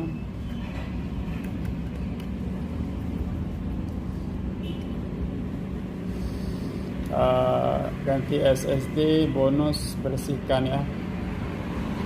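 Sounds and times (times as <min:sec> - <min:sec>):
low background rumble: 0:00.4 - 0:07.1.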